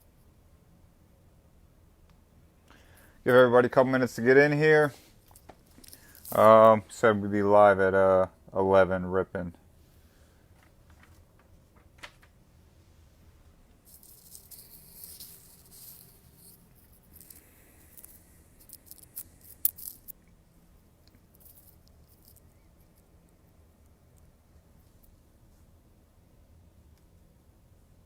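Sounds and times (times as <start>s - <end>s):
rustling and rattling of objects: 4.9s - 6.7s, 10.5s - 12.4s, 13.8s - 23.2s.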